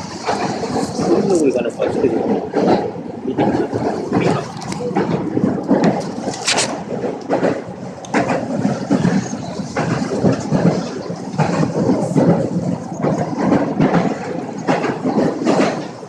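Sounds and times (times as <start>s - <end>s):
train rumbling and clattering: 0.0s - 16.0s.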